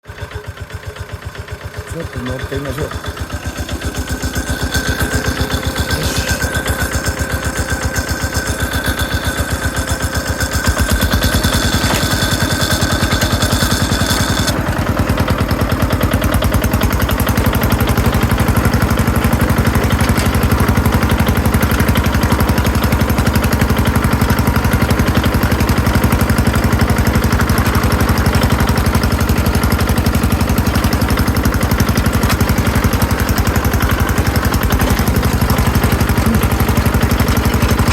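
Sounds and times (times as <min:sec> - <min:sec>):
bulldozer engine chugging: 0:00.0 - 0:37.9
high steady tone: 0:09.0 - 0:14.6.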